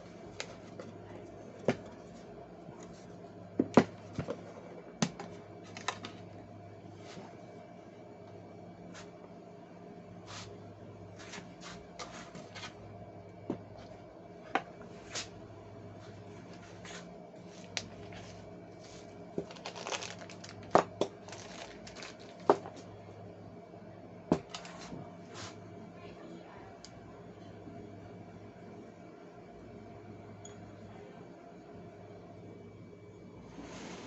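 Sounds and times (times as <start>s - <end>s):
steady low hum: 0.0s - 34.0s
hands handling tool and packaging: 19.4s - 22.8s.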